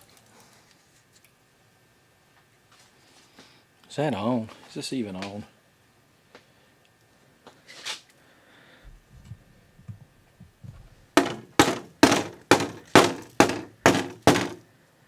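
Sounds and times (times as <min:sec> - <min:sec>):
sharp knocks on hard surface: 0:11.2 - 0:14.6.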